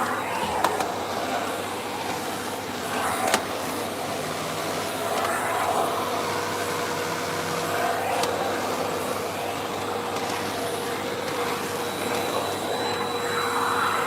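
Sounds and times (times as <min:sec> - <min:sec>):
vacuum cleaner running: 0:00.0 - 0:14.0
faint steady whine: 0:02.9 - 0:14.0.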